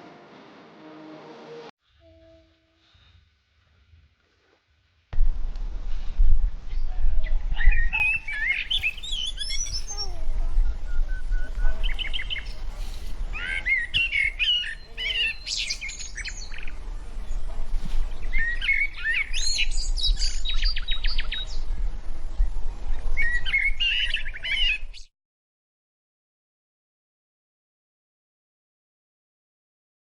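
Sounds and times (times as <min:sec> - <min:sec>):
birds singing and chirping: 0:08.0 - 0:20.8.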